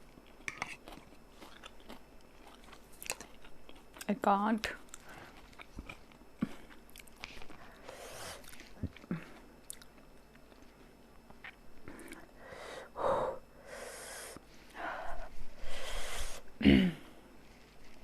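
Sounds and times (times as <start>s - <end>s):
chewing: 0.2s - 4.1s, 4.8s - 7.6s, 8.4s - 12.3s
person hissing breaths: 7.7s - 8.4s, 12.4s - 16.6s.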